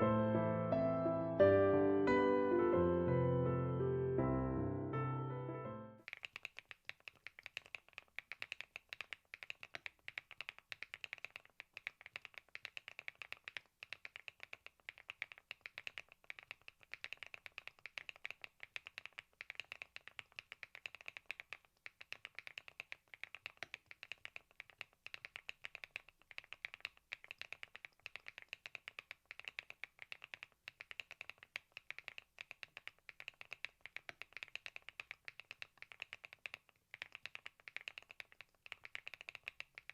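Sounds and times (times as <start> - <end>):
mechanical keyboard typing: 6.0 - 39.9.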